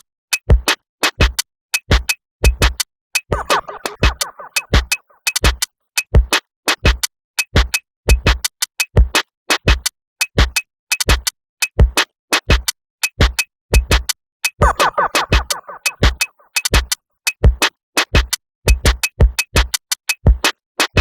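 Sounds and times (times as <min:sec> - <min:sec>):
drum machine beat: 0:00.0 - 0:21.0.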